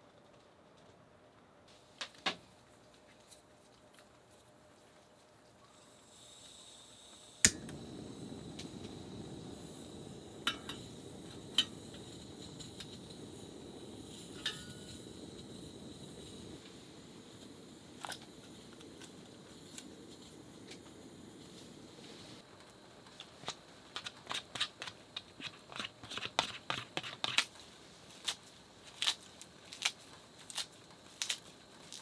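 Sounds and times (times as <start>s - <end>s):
sharp click: 7.5s - 7.8s.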